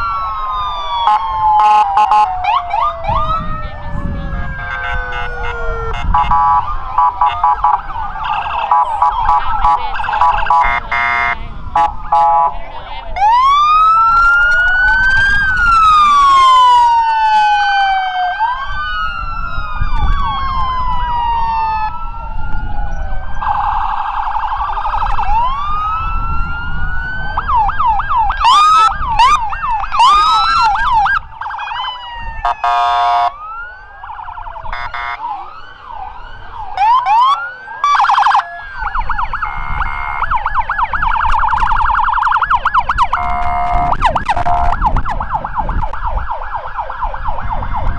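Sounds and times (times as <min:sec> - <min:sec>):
emergency vehicle sirens: 0:00.0 - 0:47.9
loud horn blasts: 0:03.4 - 0:12.7, 0:32.4 - 0:33.4, 0:34.7 - 0:35.3, 0:43.1 - 0:45.0.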